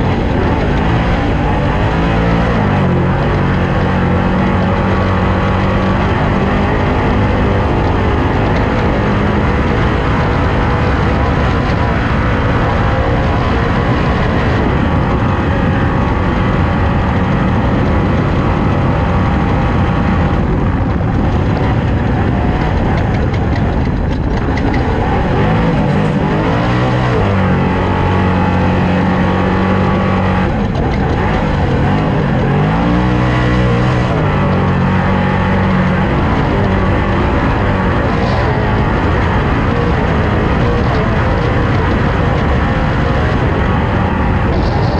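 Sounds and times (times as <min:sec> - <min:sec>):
race car engine running hard: 0:00.0 - 0:44.9.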